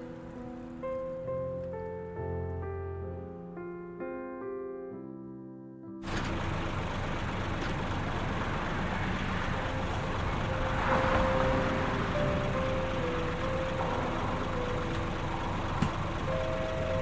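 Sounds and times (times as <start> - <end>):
piano music: 0.0 - 17.0
combine harvester running: 6.1 - 17.0
faint steady whine: 6.1 - 17.0.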